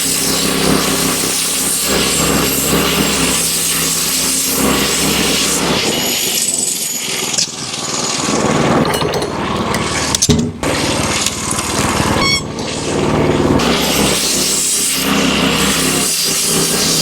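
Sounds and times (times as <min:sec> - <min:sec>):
band sawmill cutting wood: 0:00.0 - 0:08.8, 0:09.6 - 0:17.0.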